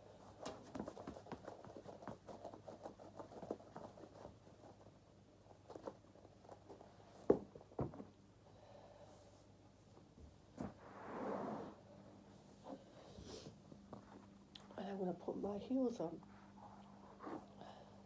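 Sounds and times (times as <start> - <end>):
soft taps and rustles: 0.2 - 8.2, 13.6 - 14.8.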